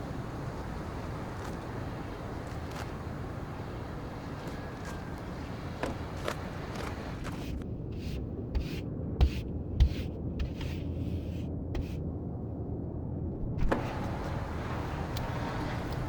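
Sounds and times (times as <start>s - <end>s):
low steady rumble: 0.0s - 16.0s
crunching scrapes in snow: 6.0s - 7.6s.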